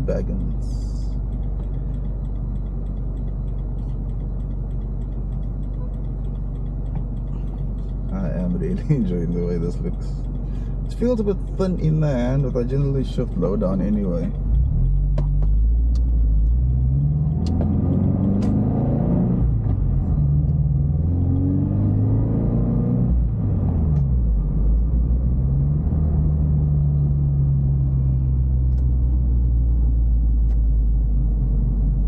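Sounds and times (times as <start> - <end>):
car engine accelerating through gears: 0.0 - 32.0.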